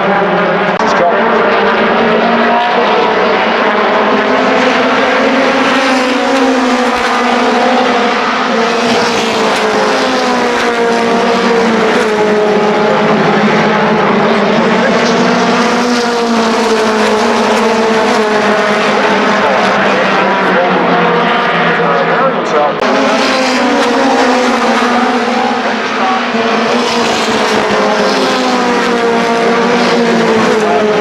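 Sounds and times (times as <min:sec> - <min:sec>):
race car engines droning: 0:00.0 - 0:31.0.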